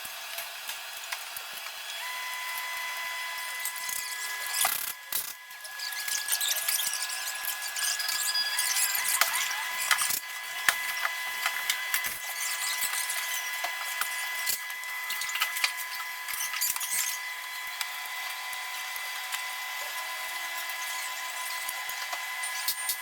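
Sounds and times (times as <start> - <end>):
hand tools clicking and scraping: 3.6 - 17.2, 21.4 - 23.0.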